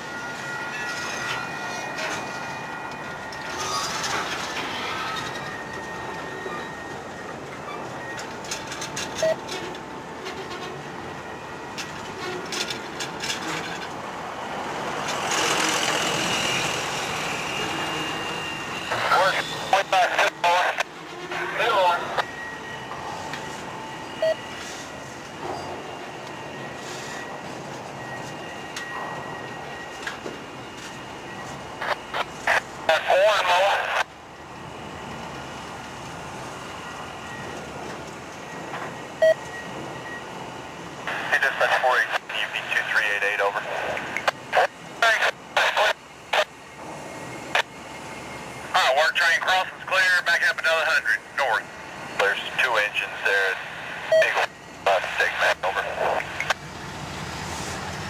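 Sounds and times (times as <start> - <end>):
faint high whine: 0.0 - 58.0
freight cars rolling on track: 0.0 - 58.0
sharp squeak: 3.5 - 5.6
faint wheel squeal: 3.5 - 6.9.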